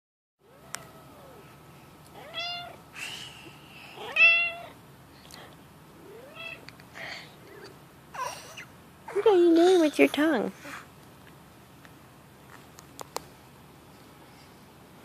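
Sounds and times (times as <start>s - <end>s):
cat meowing: 2.2s - 2.8s, 4.0s - 4.8s, 6.0s - 6.6s.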